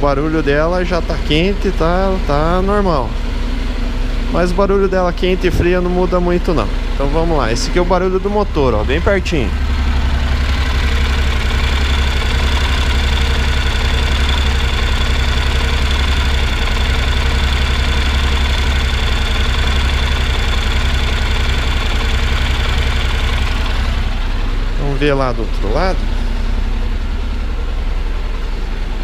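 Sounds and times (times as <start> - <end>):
motorcycle engine idling: 0.0 - 29.0.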